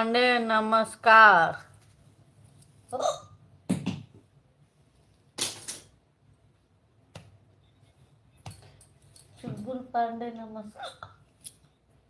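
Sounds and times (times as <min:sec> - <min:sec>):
woman hiccuping: 0:02.9 - 0:03.4.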